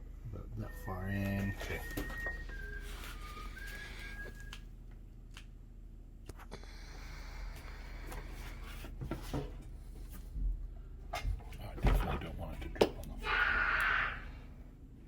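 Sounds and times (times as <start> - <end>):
thin whistle-like tone: 0.3 - 4.6.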